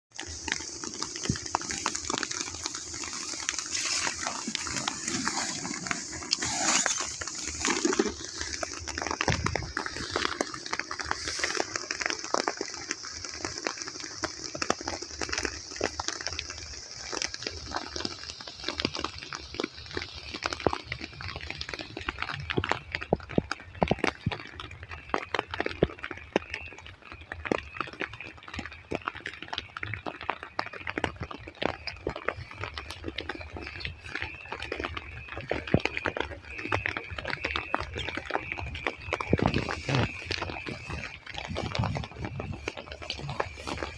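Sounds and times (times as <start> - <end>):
heavy rain falling: 0.1 - 22.8, 31.7 - 43.9
raindrops striking surfaces: 0.1 - 43.9.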